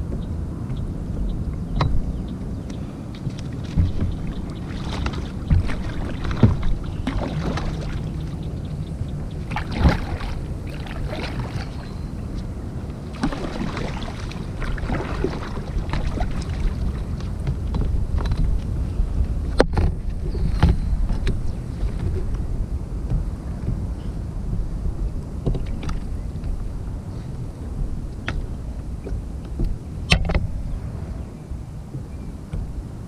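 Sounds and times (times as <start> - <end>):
wind rumble on microphone: 0.0 - 33.0
water sloshing: 2.8 - 31.2
knocks and splashes: 3.1 - 18.7, 19.4 - 23.9, 25.4 - 26.6.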